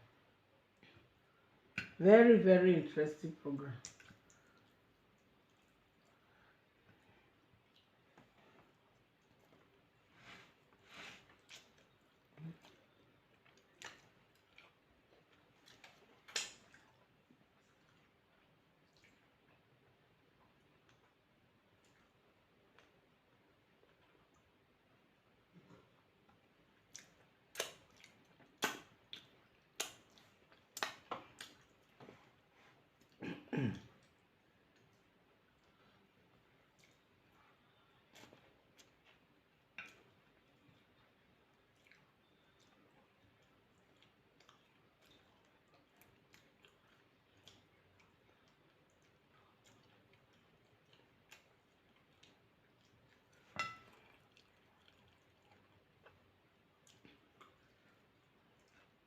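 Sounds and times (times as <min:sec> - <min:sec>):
faint clicks of eating: 0:03.8 - 0:24.8, 0:25.4 - 0:59.0
wet mouth smacks while chewing: 0:11.3 - 0:12.0, 0:15.6 - 0:17.0, 0:26.9 - 0:31.9
tableware clink: 0:53.6 - 0:53.9.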